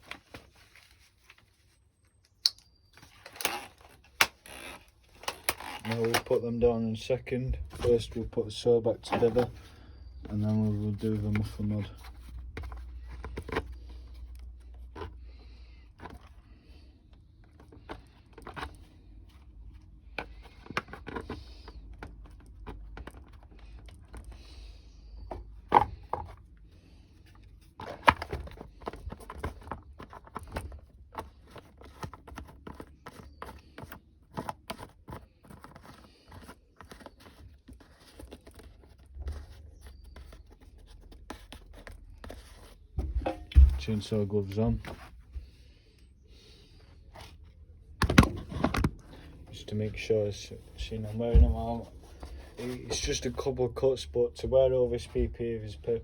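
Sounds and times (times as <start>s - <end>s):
tools and parts clinking: 43.1s - 43.7s.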